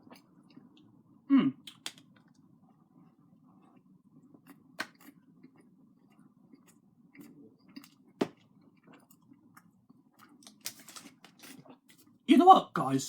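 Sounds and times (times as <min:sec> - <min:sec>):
low steady hum: 0:00.0 - 0:13.0
mouth clicks: 0:01.6 - 0:02.1
person chewing: 0:03.0 - 0:12.1.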